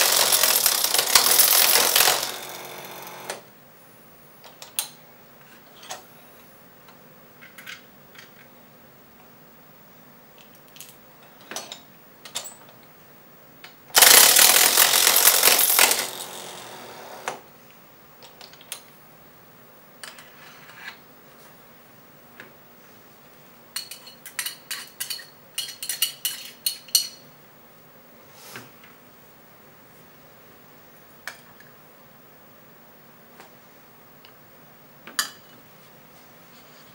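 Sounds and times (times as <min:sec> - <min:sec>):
bone mill running: 0:00.0 - 0:03.4, 0:14.0 - 0:17.4.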